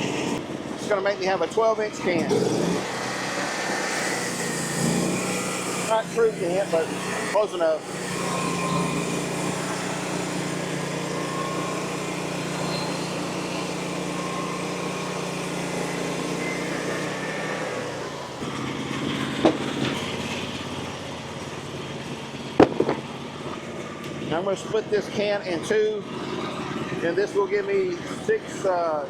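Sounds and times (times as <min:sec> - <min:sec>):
small petrol engine running: 0:00.0 - 0:29.0
knocks: 0:22.6 - 0:23.0.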